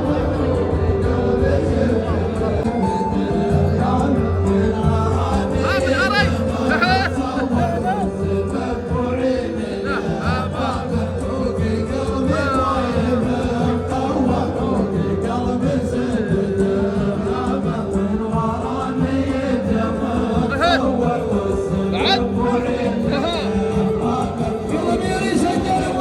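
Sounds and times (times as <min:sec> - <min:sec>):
music accompaniment: 0:00.0 - 0:26.0
group of voices chanting: 0:05.2 - 0:11.2, 0:18.7 - 0:24.8.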